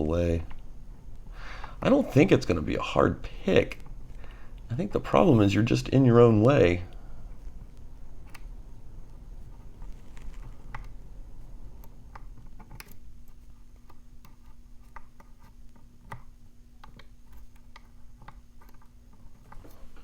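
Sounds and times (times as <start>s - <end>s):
lock pick clicking and scratching: 11.8s - 19.8s.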